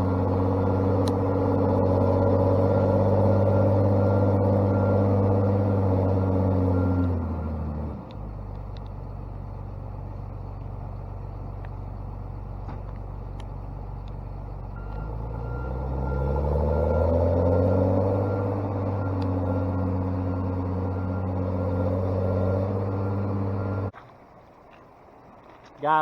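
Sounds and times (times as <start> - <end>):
backup alarm beeping: 0.0 - 7.4, 14.7 - 23.9
heavy machine diesel engine: 0.0 - 24.0.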